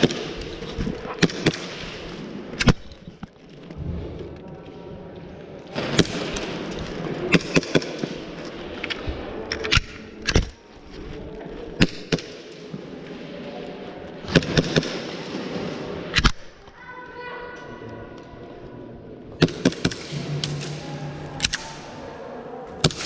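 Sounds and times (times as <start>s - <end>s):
airsoft gunfire: 1.2s - 2.0s, 14.2s - 16.4s, 19.4s - 20.8s, 22.8s - 23.0s.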